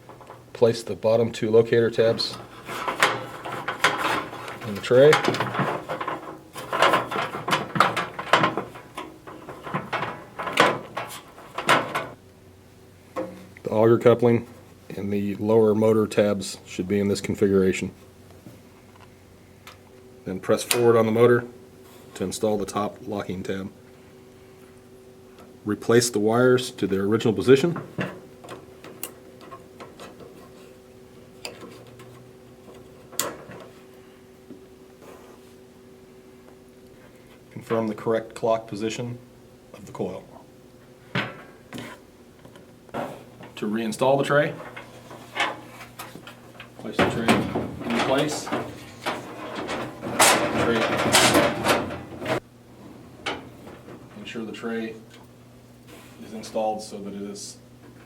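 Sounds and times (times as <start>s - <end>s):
faint steady hum: 0.0s - 58.0s
plastic parts clicking and knocking: 2.7s - 12.2s.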